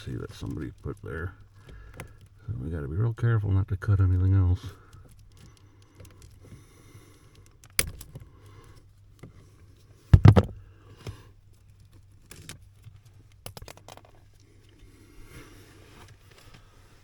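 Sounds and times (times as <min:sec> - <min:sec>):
tools clicking and knocking: 0:10.2 - 0:10.6, 0:12.2 - 0:14.5.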